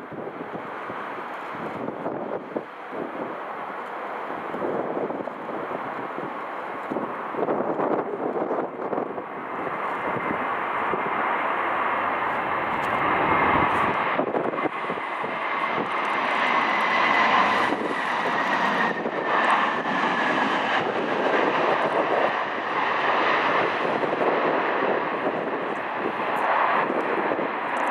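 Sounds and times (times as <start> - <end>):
aircraft engines running: 0.0 - 27.9.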